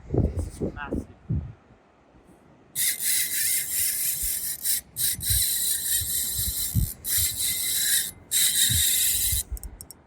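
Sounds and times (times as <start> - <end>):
fishing reel drag screaming: 2.8 - 9.9.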